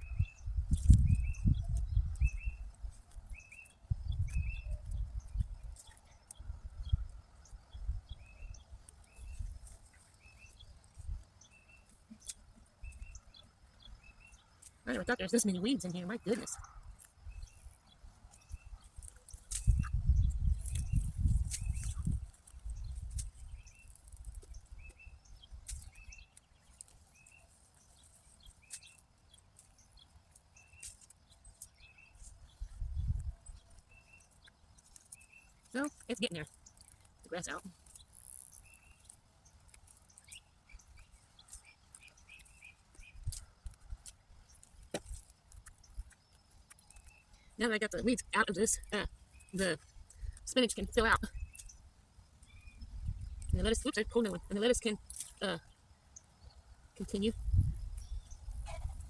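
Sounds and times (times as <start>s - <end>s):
bird chirping: 0.0s - 59.0s
weeds pulled with thuds and rustling: 18.4s - 33.3s, 34.7s - 47.2s.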